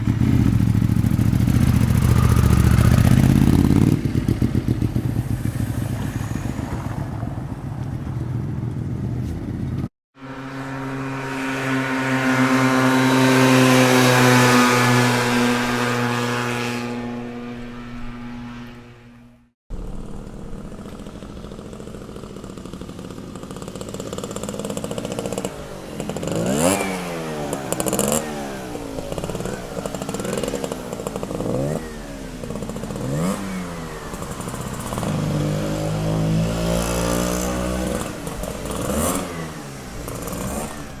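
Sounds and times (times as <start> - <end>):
motorcycle engine idling and revving: 0.0 - 41.0.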